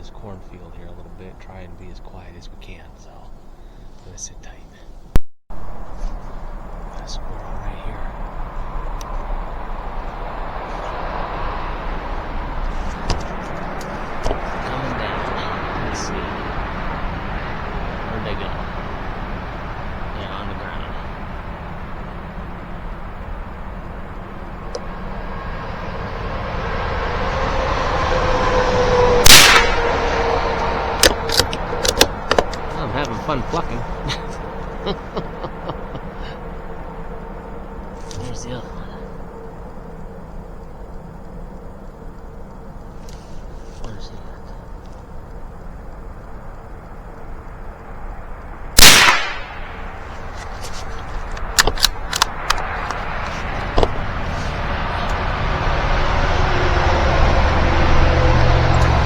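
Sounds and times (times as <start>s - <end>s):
steady rushing noise: 5.5s - 59.0s
rifle shot: 29.2s - 30.2s, 48.8s - 49.9s
sharp clicks: 31.0s - 32.7s, 51.2s - 53.0s.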